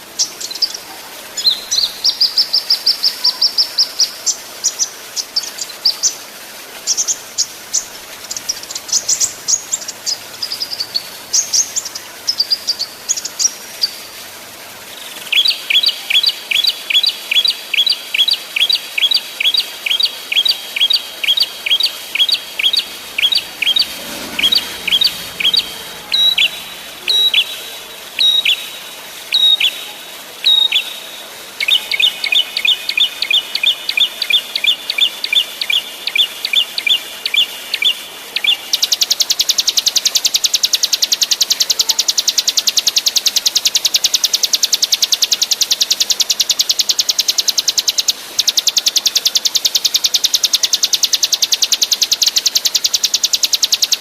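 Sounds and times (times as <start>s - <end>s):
songbirds twittering: 0.0s - 54.0s
sharp descending bird chirps: 19.1s - 29.8s.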